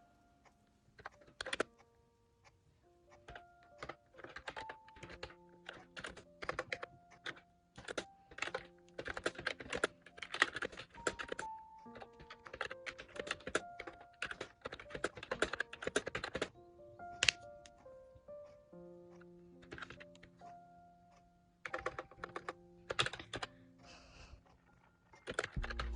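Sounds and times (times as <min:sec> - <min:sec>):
soft background music: 0:00.0 - 0:25.9
keyboard key clicks: 0:01.0 - 0:01.8, 0:17.1 - 0:17.8, 0:25.2 - 0:25.9.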